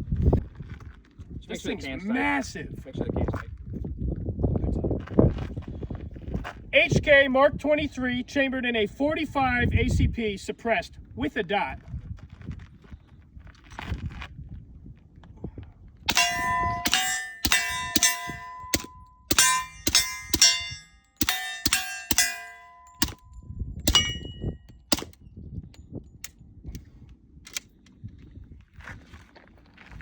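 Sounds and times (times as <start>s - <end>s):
suppressed pistol shots: 16.1s - 23.2s, 23.9s - 25.1s
steel targets ringing: 16.1s - 23.3s, 23.9s - 25.0s.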